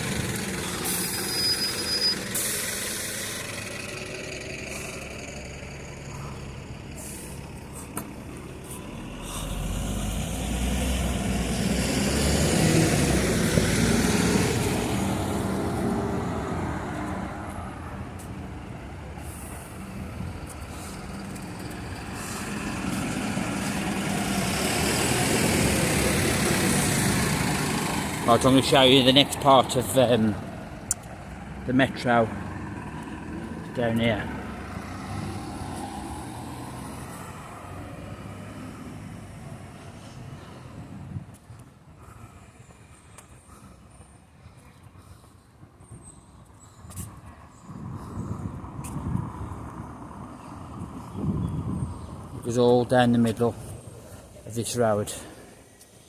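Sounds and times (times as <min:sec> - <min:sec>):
heavy vehicle rumbling past: 0:00.0 - 0:41.3
vehicle approaching: 0:00.0 - 0:56.0.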